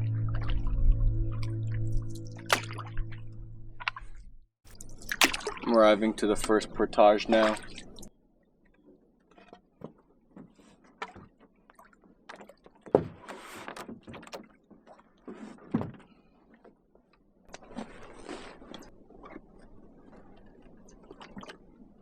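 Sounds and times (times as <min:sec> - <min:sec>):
paddle splashes: 0:02.4 - 0:08.1, 0:08.8 - 0:22.0
sharp knocks on canoe: 0:02.5 - 0:02.9, 0:12.9 - 0:14.5, 0:15.7 - 0:16.0.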